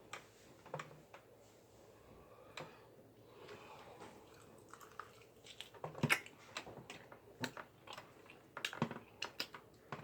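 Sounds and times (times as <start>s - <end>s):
chewing with wet clicks: 4.2s - 9.9s.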